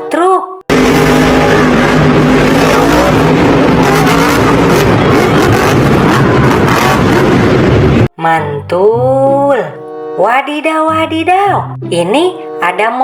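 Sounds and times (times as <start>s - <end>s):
monster truck engine running: 0.7s - 8.1s.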